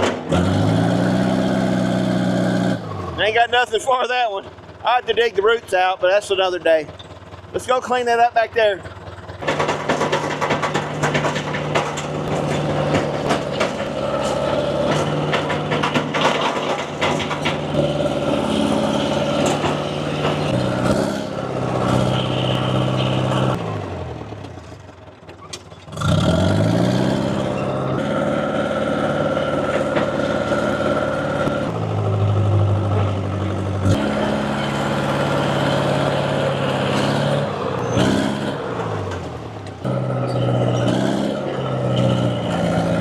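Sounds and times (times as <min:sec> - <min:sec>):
dozer diesel engine: 0:00.0 - 0:43.0
sharp clanks and cracks: 0:09.3 - 0:23.7, 0:29.5 - 0:31.8.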